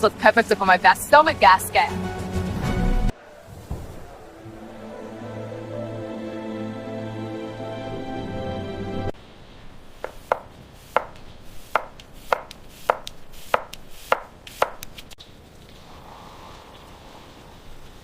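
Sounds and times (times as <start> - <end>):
knife chopping on cutting board: 10.0 - 15.0.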